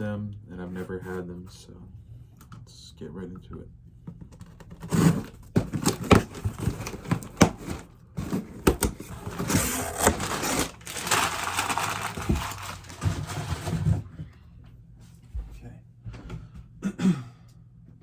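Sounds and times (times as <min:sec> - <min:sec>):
packaging rustling and tearing: 0:04.7 - 0:14.0.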